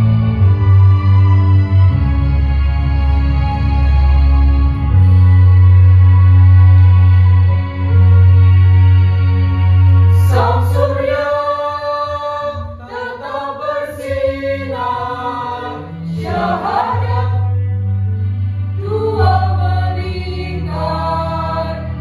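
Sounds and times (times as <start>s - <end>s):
backing track: 0.0s - 22.0s
children's choir singing: 10.1s - 17.8s, 18.8s - 22.0s.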